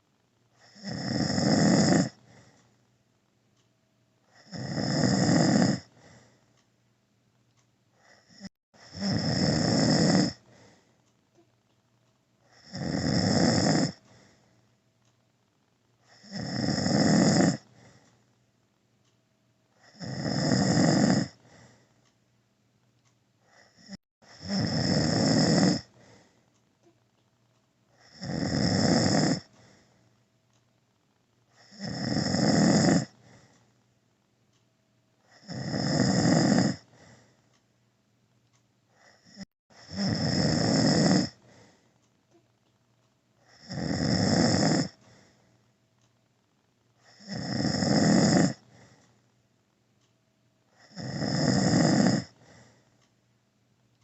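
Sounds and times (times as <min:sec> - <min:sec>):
quiet breathing: 0:00.0 - 0:34.6, 0:35.2 - 0:53.4
man snoring: 0:00.6 - 0:02.6, 0:04.2 - 0:06.4, 0:08.0 - 0:10.8, 0:12.4 - 0:14.4, 0:16.0 - 0:18.1, 0:19.7 - 0:21.8, 0:23.4 - 0:26.3, 0:27.9 - 0:29.9, 0:31.5 - 0:33.6, 0:35.2 - 0:37.3, 0:38.9 - 0:41.8, 0:43.4 - 0:45.3, 0:47.0 - 0:49.0, 0:50.7 - 0:52.8.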